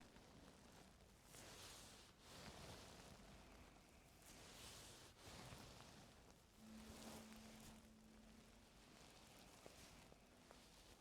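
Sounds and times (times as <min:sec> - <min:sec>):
faint rustling hiss: 0:00.6 - 0:11.0.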